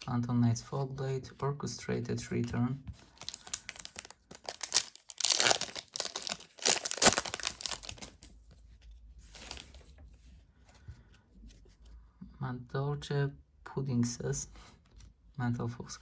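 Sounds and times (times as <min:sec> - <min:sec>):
foil wrapper tearing and crinkling: 0:03.1 - 0:08.3.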